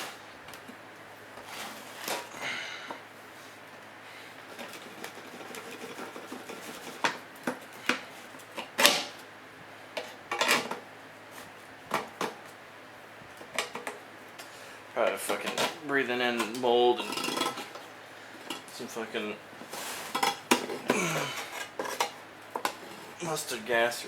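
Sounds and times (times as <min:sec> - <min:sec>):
hand tools clanking on sheet metal: 0:15.0 - 0:17.8.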